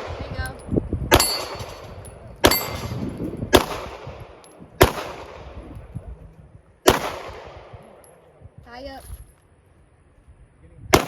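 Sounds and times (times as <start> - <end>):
pistol shots: 1.1 - 5.6, 6.8 - 8.1.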